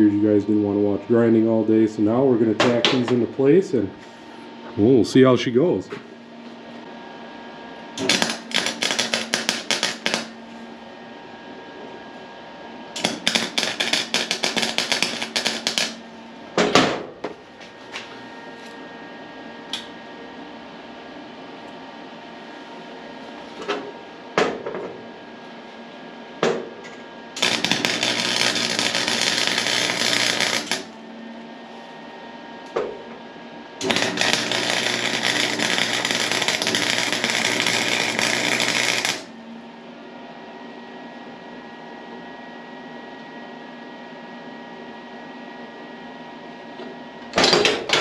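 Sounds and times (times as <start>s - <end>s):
arc welding crackle: 8.0s - 10.5s, 13.0s - 16.2s, 27.4s - 31.0s, 33.8s - 39.4s.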